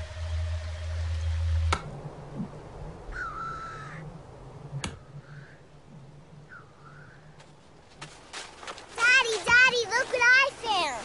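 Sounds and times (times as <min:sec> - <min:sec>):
bird cawing: 0:03.1 - 0:04.2, 0:05.0 - 0:05.8.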